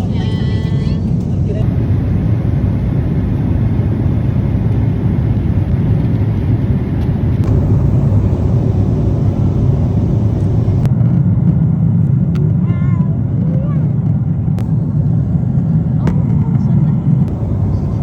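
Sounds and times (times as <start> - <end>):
jet airliner cabin rumble: 0.0 - 10.9, 14.5 - 18.0.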